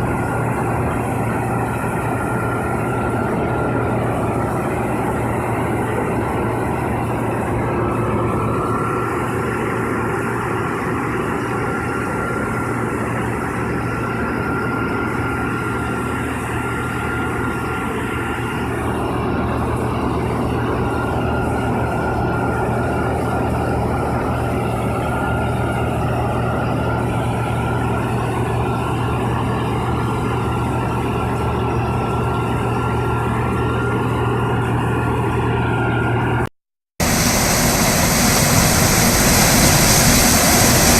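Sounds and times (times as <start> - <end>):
diesel engine running: 0.0 - 40.9
high whine: 37.0 - 40.9.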